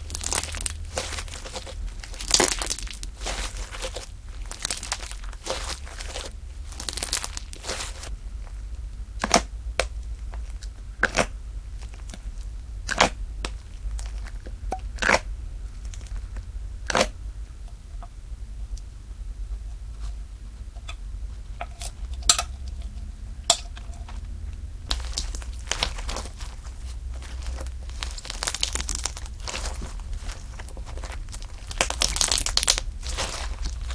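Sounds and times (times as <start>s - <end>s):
slime popping and crackling: 0.0s - 17.2s, 24.9s - 33.9s.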